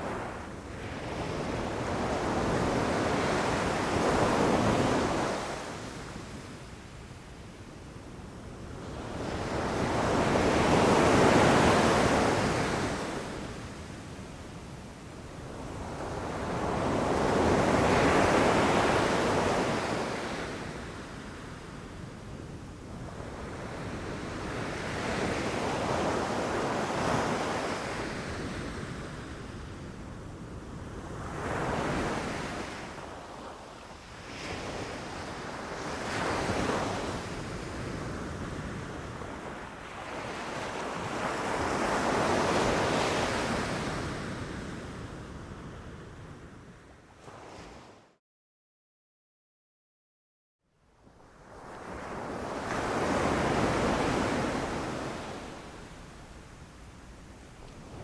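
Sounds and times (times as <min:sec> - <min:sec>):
ocean waves breaking on beach: 0:51.7 - 0:58.0.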